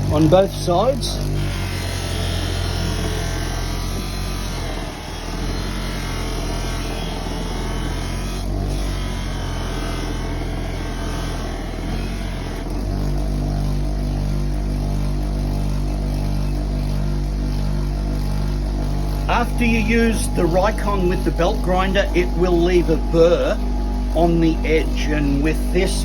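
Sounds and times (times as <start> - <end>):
bench grinder motor hum: 0.0 - 26.0
blade buffing rushing sound: 16.1 - 26.0.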